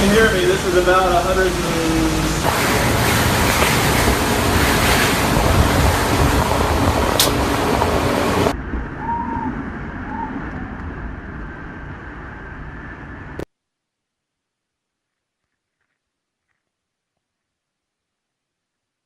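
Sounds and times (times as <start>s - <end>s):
wind blasting microphone: 0.0s - 13.4s.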